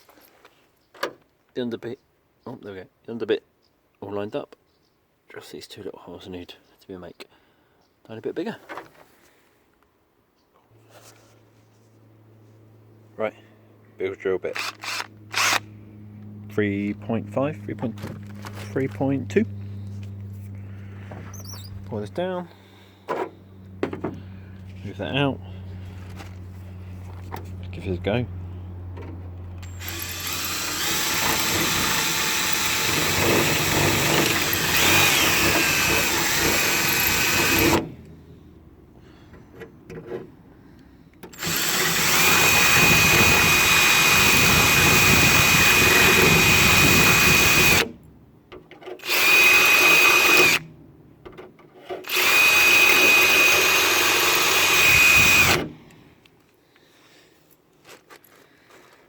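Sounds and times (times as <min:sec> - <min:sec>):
electric drill boring metal: 0:14.6 - 0:15.6, 0:29.6 - 0:37.9, 0:41.3 - 0:47.9, 0:49.0 - 0:50.6, 0:52.0 - 0:55.7.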